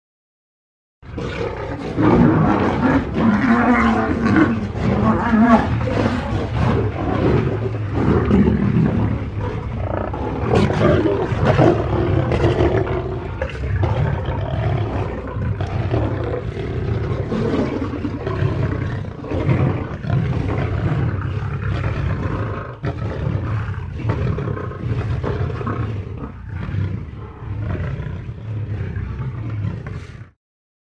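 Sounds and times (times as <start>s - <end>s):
lions snarling and roaring: 1.0s - 30.4s.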